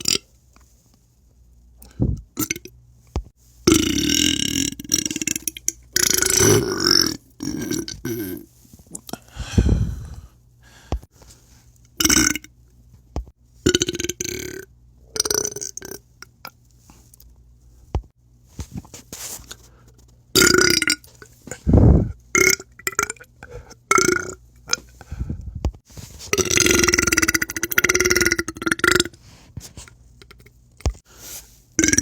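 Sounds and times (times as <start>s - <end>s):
deep burps: 0.0s - 0.2s, 3.7s - 9.2s, 12.0s - 12.5s, 13.6s - 16.0s, 20.4s - 24.9s, 26.3s - 29.1s, 31.8s - 32.0s.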